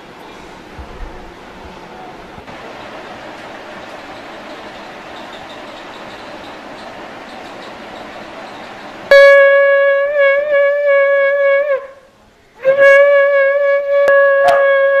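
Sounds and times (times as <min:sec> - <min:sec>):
conch shell blasts: 0:09.1 - 0:15.0.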